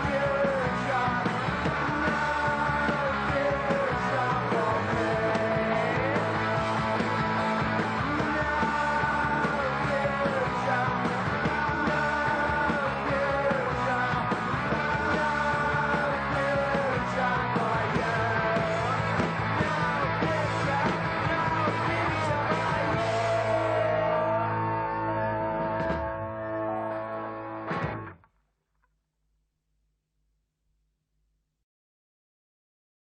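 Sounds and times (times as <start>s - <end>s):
punk rock band playing: 0.0s - 28.2s
person singing or yelling: 19.6s - 27.5s.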